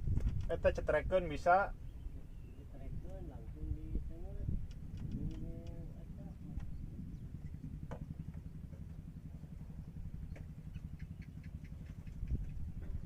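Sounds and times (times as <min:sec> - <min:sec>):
small engine idling: 0:01.7 - 0:13.0
light clicks: 0:04.6 - 0:05.8.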